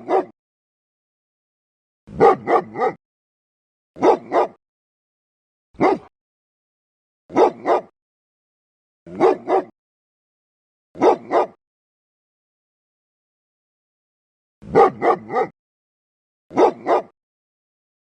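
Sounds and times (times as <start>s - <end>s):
dog barking: 0.0s - 0.4s, 2.1s - 3.0s, 4.0s - 4.6s, 5.8s - 6.1s, 7.3s - 7.9s, 9.1s - 9.8s, 11.0s - 11.6s, 14.6s - 15.6s, 16.5s - 17.2s.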